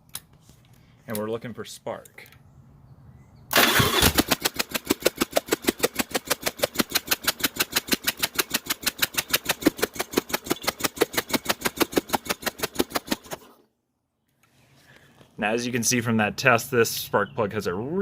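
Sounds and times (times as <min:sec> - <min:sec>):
motorcycle engine putt-putt: 0:03.5 - 0:13.5.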